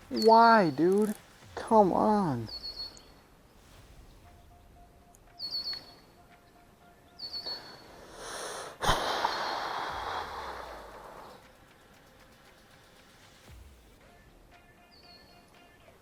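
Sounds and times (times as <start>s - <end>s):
birds chirping: 0.0s - 14.0s, 14.8s - 15.6s
rushing hiss: 0.8s - 4.4s, 7.8s - 14.1s.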